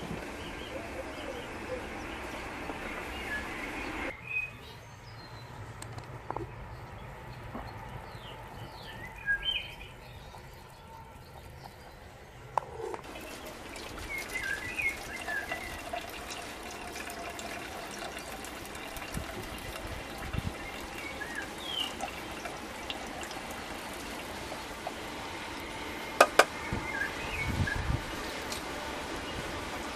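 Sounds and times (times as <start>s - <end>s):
water boiling: 0.0s - 4.2s, 9.4s - 29.9s
small birds chirping: 0.1s - 16.4s, 18.0s - 22.6s.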